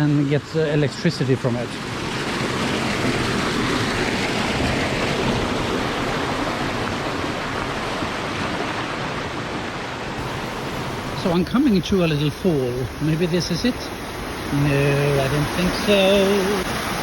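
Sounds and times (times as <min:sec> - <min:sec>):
water pouring through a dam: 0:10.2 - 0:17.0.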